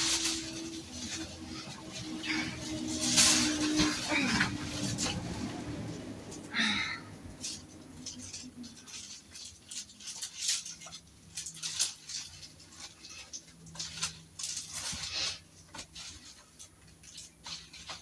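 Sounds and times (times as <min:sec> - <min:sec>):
scoop scraping cat litter: 0:00.0 - 0:06.4.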